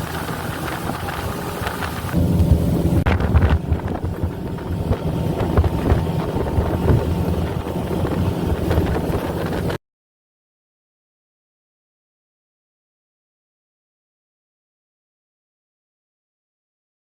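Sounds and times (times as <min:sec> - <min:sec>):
motorboat engine running: 0:00.0 - 0:09.8
wind buffeting microphone: 0:00.0 - 0:09.8.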